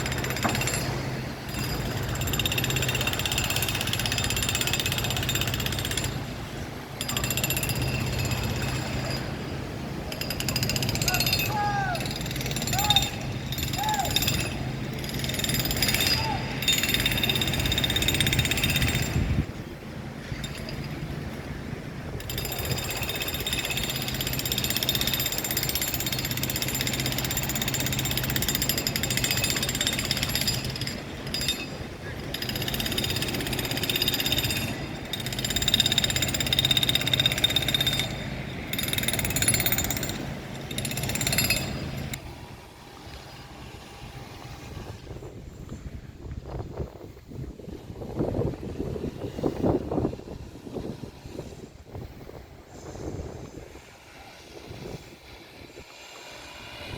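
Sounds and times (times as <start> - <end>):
jackhammer hammering: 0.0 - 19.4, 22.2 - 42.2.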